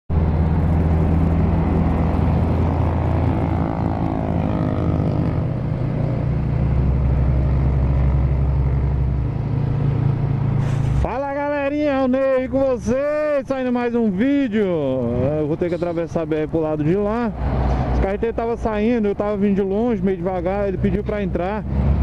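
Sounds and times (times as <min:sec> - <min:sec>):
vehicle engine running at low revs: 0:00.1 - 0:15.5.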